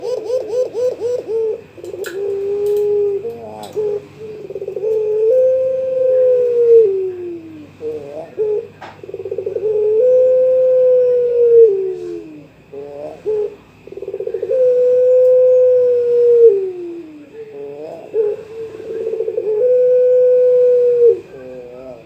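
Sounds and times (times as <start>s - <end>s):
dove cooing: 0.0s - 22.0s.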